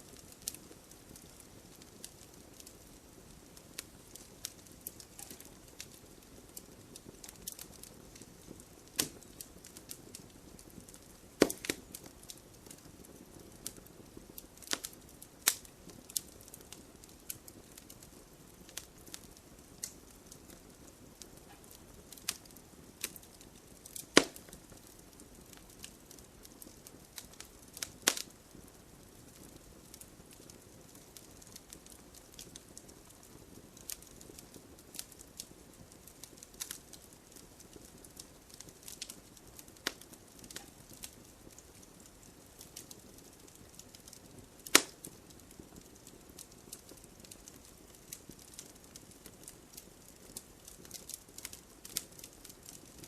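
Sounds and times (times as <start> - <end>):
wood fire crackling: 0.0 - 53.0.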